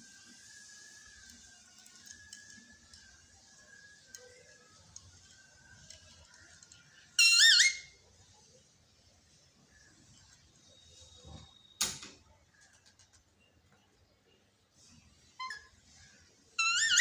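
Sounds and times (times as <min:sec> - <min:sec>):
parrot shrill call: 0:07.2 - 0:08.0, 0:16.6 - 0:17.0.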